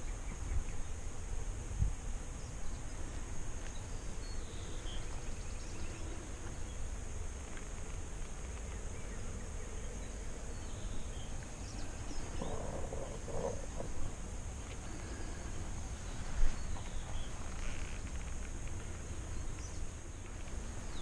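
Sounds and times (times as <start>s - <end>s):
insect drone: 0.0s - 21.0s
faint bird chirps: 8.6s - 18.3s.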